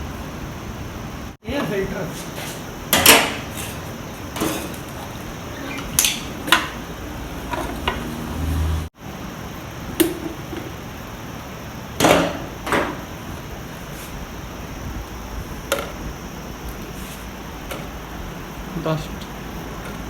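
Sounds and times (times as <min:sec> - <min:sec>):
metal parts and tools clattering: 0:04.4 - 0:05.2.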